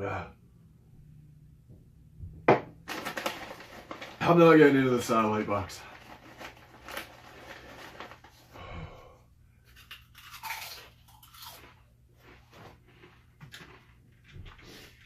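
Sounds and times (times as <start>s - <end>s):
chips being chewed: 9.7s - 14.9s.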